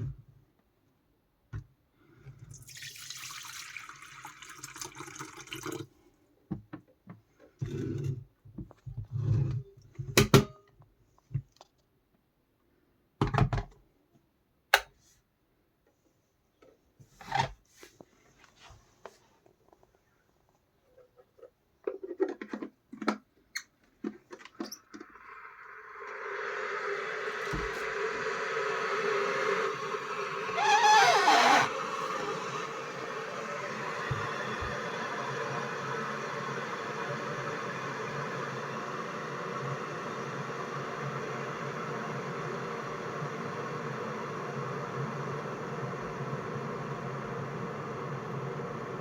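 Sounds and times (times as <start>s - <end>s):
kettle hiss heating water: 2.0s - 5.9s, 24.3s - 49.0s
water running from a tap: 2.6s - 5.8s
kettle clicks and knocks: 27.4s - 27.9s.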